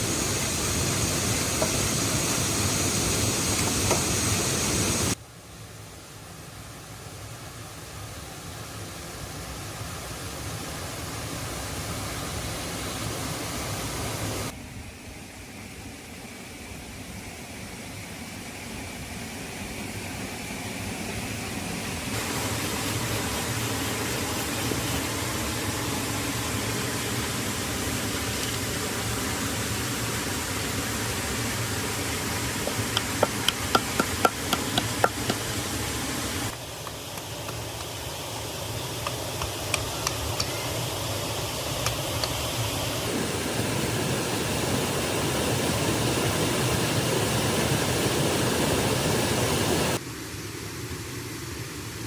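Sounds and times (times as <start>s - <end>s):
rain hissing: 0.0s - 5.2s, 6.7s - 14.6s, 15.5s - 52.0s.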